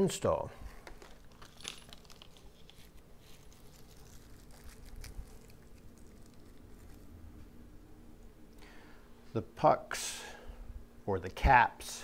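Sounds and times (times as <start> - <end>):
low steady hum: 0.0 - 12.0
plastic packet rustling: 0.7 - 7.2.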